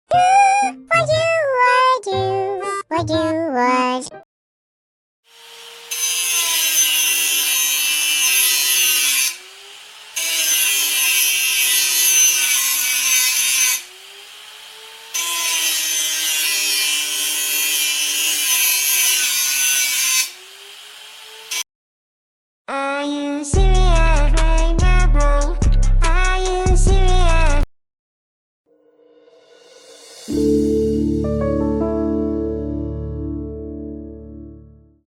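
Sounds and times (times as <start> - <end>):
grinder motor whine: 5.3 - 16.0, 20.2 - 21.6
angle grinder grinding: 5.3 - 21.6.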